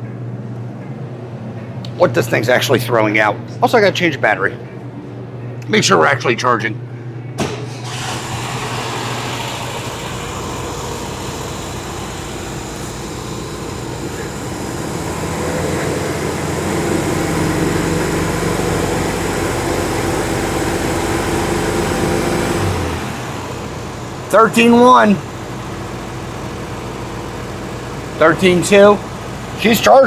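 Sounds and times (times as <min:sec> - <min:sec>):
air-cooled car engine running: 0:07.4 - 0:30.0.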